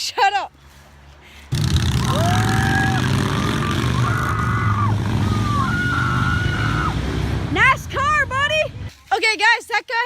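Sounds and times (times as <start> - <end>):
engine driving by: 1.5 - 8.9.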